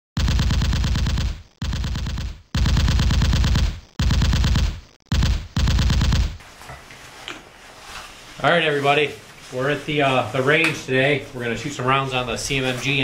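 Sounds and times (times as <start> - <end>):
automatic gunfire bursts: 0.2 - 6.4.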